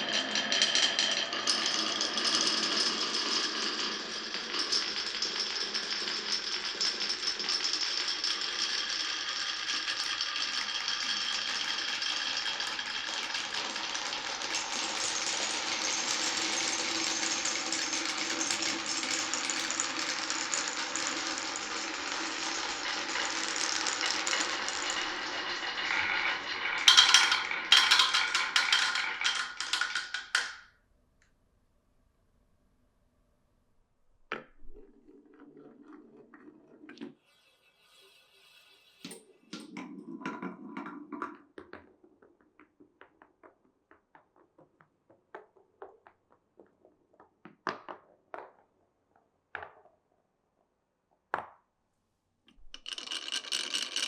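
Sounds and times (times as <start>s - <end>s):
marbles clacking on wood: 0.0s - 30.8s, 38.4s - 48.8s, 52.5s - 54.0s
marbles rolling on a track: 0.0s - 30.8s, 34.3s - 48.6s, 52.5s - 54.0s.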